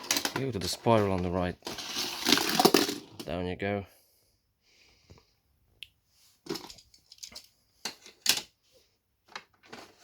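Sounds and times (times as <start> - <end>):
toy car clattering down plastic ramp: 0.0 - 1.0, 1.6 - 3.2.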